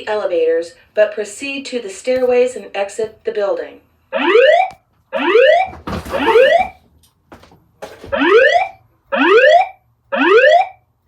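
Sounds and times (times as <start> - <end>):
fire alarm whoop tone: 8.2 - 10.8.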